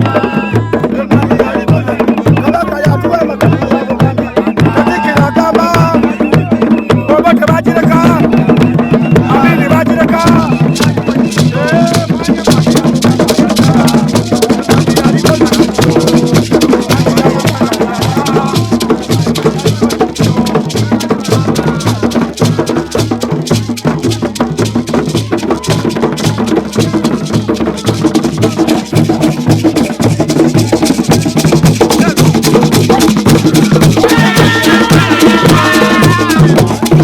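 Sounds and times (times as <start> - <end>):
drum ensemble playing fast beat: 0.0 - 37.0
shaker rattle accents: 8.0 - 37.0.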